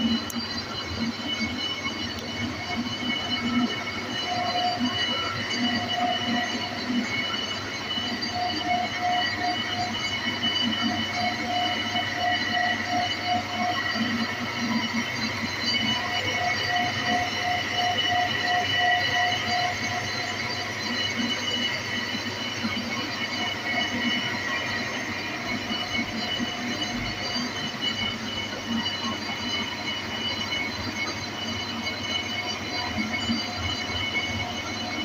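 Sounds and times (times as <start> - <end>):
high metallic squeal: 0.0 - 35.0
machine running on wheel rim: 0.0 - 35.0
pulsing tone: 0.0 - 35.0.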